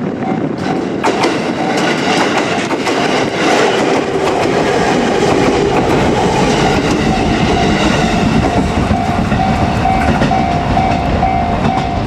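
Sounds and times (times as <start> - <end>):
train wheels clattering on rails: 0.0 - 12.0
level crossing warning bell: 6.5 - 12.0.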